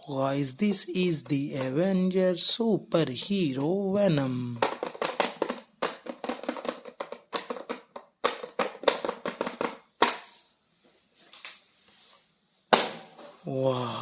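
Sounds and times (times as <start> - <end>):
plastic toy clicking and crinkling: 4.5 - 10.2.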